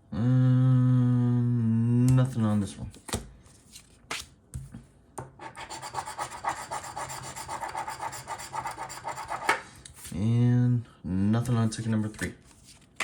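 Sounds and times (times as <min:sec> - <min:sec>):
lottery ticket being scratched: 0:05.4 - 0:10.1.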